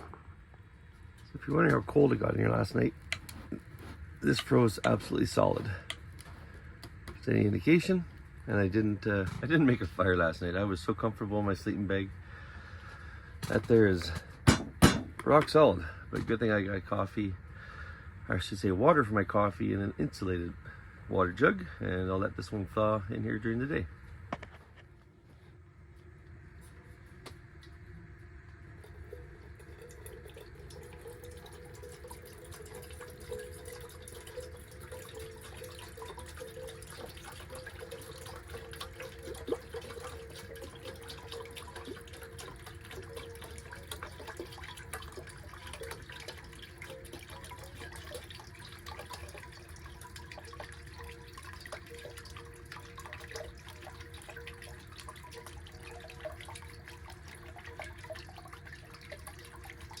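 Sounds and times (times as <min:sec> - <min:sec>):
water bubbling and simmering: 0:00.0 - 0:21.0, 0:27.4 - 1:00.0
stove ticking and popping: 0:02.9 - 0:07.3.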